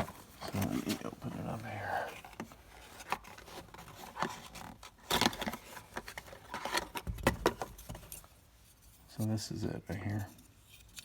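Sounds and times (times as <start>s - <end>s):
packaging rustling: 0.0s - 8.2s.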